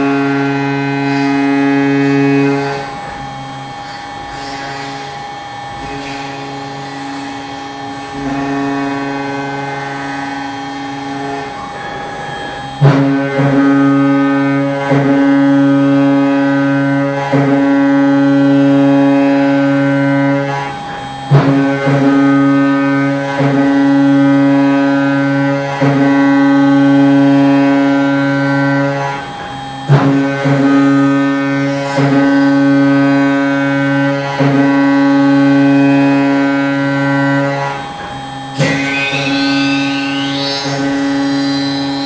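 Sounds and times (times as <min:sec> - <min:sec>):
droning background music: 0:00.0 - 0:42.0
rising sweep: 0:38.5 - 0:42.0.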